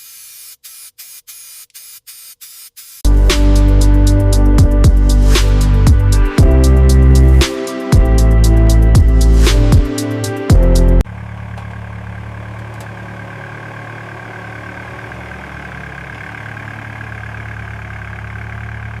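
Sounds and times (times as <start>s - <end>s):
music: 3.1s - 11.0s
engine idling: 11.0s - 19.0s.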